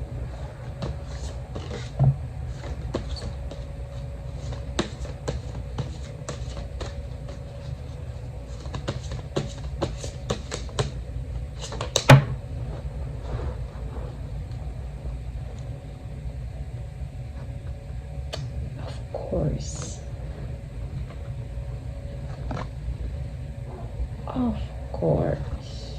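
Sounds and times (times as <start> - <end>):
cards clicking and tapping: 8.6 - 11.0.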